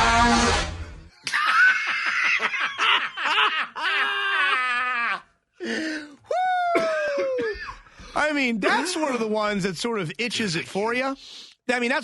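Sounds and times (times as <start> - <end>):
men laughing hard: 1.2 - 5.4.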